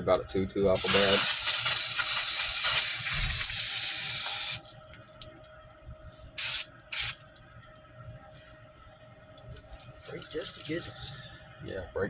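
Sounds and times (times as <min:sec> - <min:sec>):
aerosol spray hissing: 0:00.8 - 0:04.6, 0:06.4 - 0:07.3.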